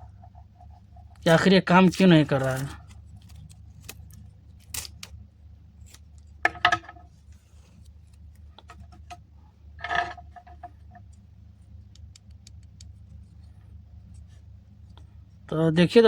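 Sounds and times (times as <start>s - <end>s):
low steady hum: 0.0s - 16.0s
small tools clicking on plastic: 11.9s - 12.9s.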